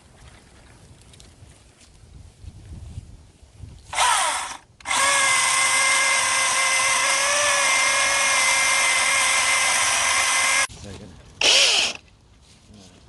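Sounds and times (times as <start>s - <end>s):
electric chainsaw whining: 3.9s - 10.7s, 11.4s - 12.0s.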